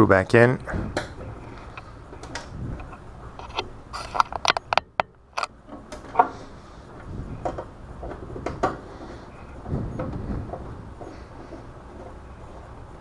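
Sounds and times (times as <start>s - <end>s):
screwdriver clicking and scraping: 1.1s - 6.3s.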